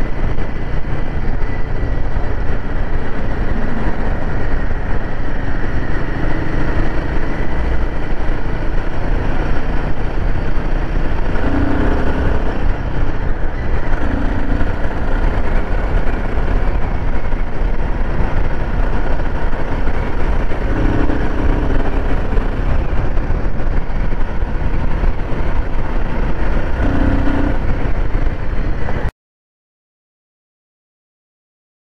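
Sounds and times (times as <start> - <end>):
motorcycle engine running: 0.0 - 29.1
wind rush on microphone: 0.0 - 29.1.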